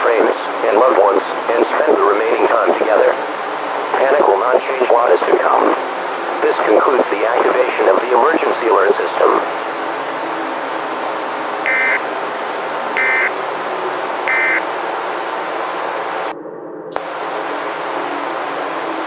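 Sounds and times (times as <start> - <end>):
static hiss: 0.0 - 16.4, 17.0 - 19.0
warbling digital data tones: 11.7 - 12.1, 13.0 - 13.3, 14.2 - 14.6.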